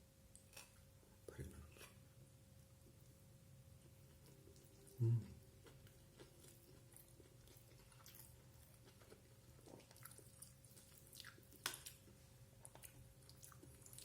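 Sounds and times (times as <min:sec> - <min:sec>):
faint steady hum: 0:00.0 - 0:14.0
person chewing: 0:03.8 - 0:14.0.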